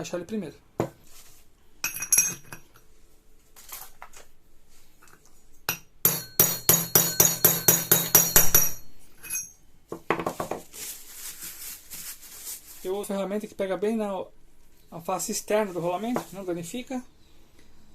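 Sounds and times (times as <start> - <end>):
light clinks of metal parts: 1.8 - 2.9, 7.2 - 9.6
hammer striking metal driver: 5.7 - 9.4.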